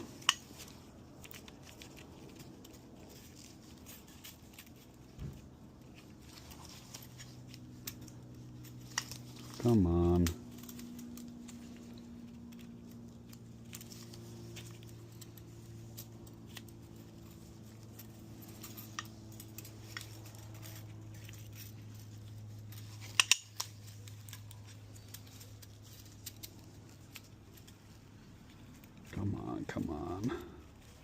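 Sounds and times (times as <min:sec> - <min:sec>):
steady low hum: 0:00.0 - 0:31.0
metallic clicks of hand tools: 0:23.0 - 0:23.7.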